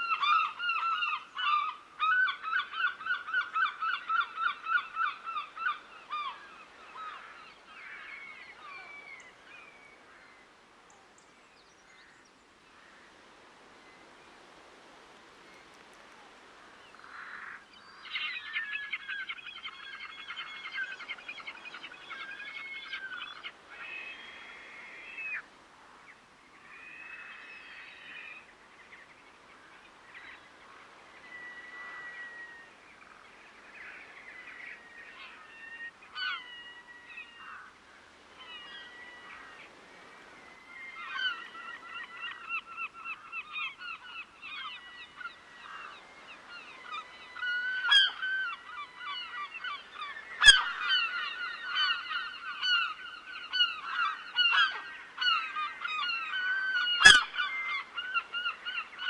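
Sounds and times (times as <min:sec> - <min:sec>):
waterbirds calling: 0:00.0 - 0:25.5, 0:26.1 - 0:59.0
faint steady background noise: 0:00.0 - 0:59.0.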